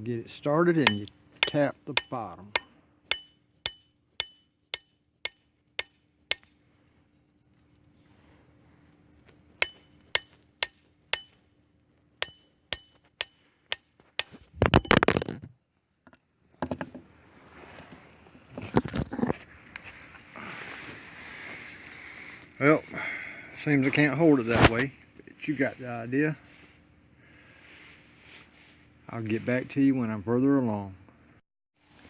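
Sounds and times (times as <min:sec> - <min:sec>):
sharp taps on wooden handle: 0:00.9 - 0:06.6
clattering and handling noise: 0:12.5 - 0:17.1.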